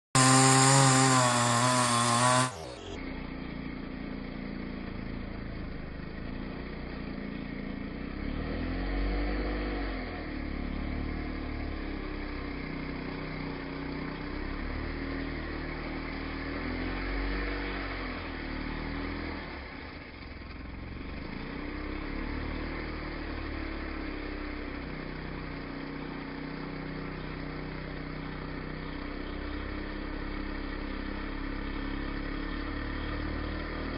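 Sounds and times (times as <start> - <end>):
chainsaw engine revving: 0.0 - 3.0.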